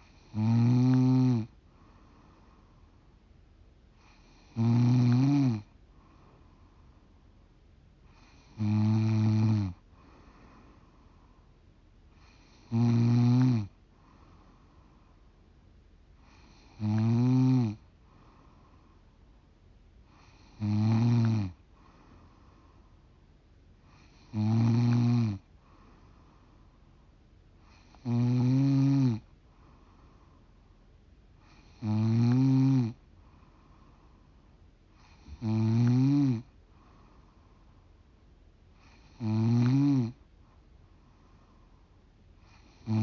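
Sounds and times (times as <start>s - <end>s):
woman snoring: 0.0s - 1.6s, 4.0s - 5.7s, 8.1s - 9.8s, 12.2s - 13.8s, 16.2s - 17.8s, 20.1s - 21.6s, 23.9s - 25.5s, 27.7s - 29.3s, 31.4s - 33.0s, 35.0s - 36.5s, 38.8s - 40.2s, 42.5s - 43.0s
quiet breathing: 0.0s - 43.0s.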